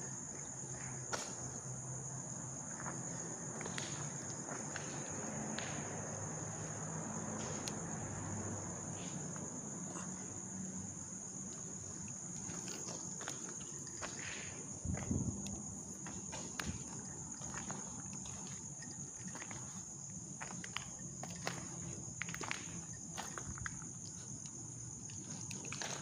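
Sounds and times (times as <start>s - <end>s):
crickets trilling: 0.0s - 26.0s.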